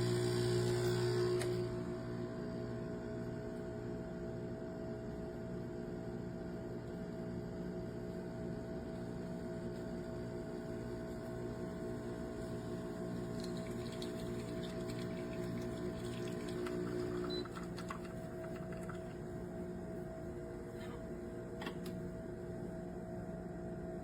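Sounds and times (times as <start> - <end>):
espresso machine humming: 0.0 - 2.8, 7.9 - 22.6.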